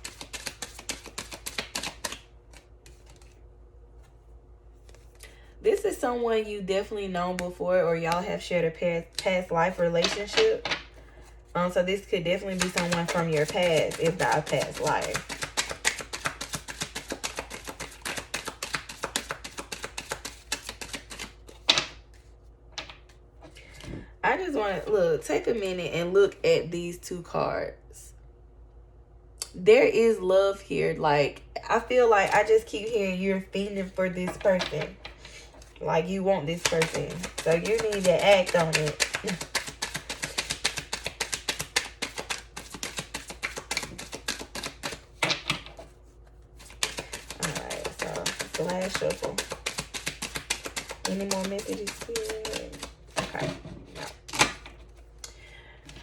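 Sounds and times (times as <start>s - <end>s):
cards being shuffled: 0.0s - 3.4s, 4.8s - 5.2s, 10.0s - 10.8s, 12.3s - 23.9s, 33.8s - 55.2s.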